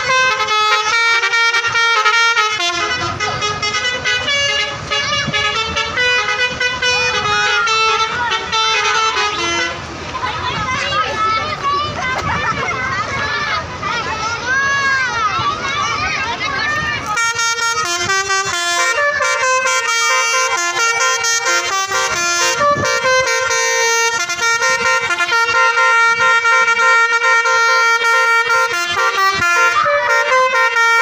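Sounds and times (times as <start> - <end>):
musical air horn melody: 0.0 - 9.8, 17.2 - 31.0.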